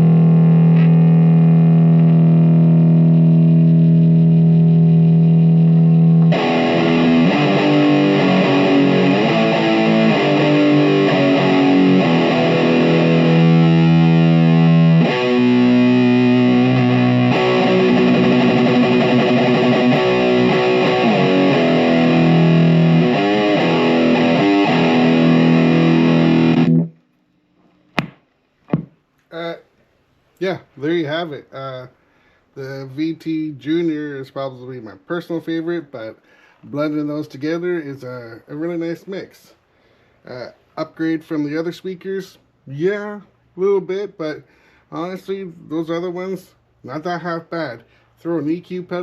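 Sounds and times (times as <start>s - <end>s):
electric guitar chords and riffs: 0.0s - 27.0s.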